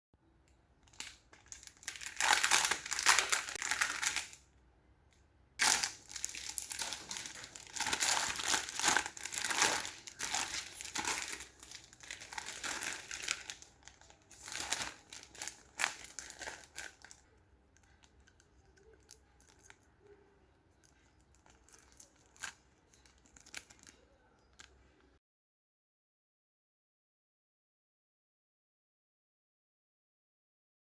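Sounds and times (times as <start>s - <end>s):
plastic package crinkling: 0.8s - 4.5s, 5.6s - 25.0s.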